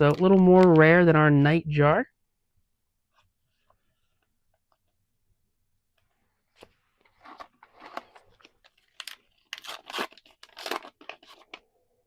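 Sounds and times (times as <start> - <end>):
wrapper tearing and crinkling: 7.2 - 11.6.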